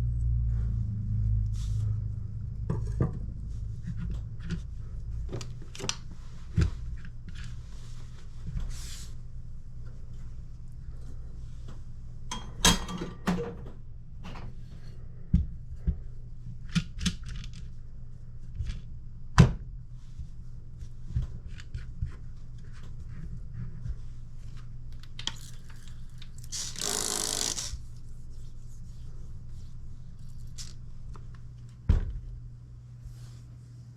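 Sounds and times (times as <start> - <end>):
steady low hum: 0.0 - 33.9
short rasping noise: 26.4 - 27.8.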